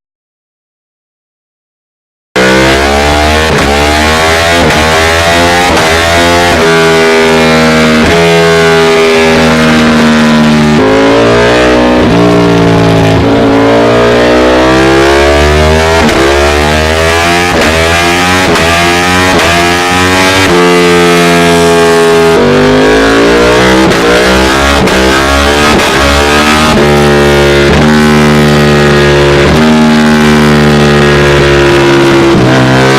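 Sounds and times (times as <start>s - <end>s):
motorcycle engine accelerating: 2.4s - 32.9s.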